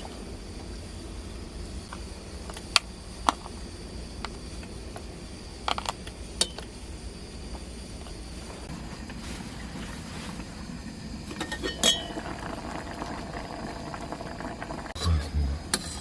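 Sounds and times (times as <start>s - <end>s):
dishes and utensils clinking: 11.3s - 12.2s.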